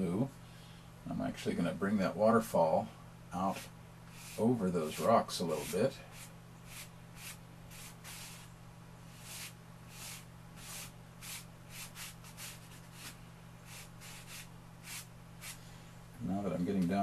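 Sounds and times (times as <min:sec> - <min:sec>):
steady low hum: 0:00.0 - 0:17.0
chalk scratching: 0:03.5 - 0:08.5, 0:09.1 - 0:15.6.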